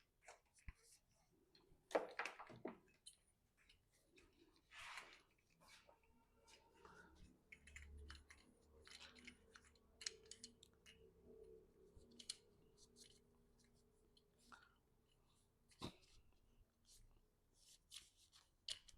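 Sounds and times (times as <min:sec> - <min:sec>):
small parts clicking and tapping: 0:01.5 - 0:04.6, 0:06.5 - 0:14.6, 0:17.9 - 0:18.9.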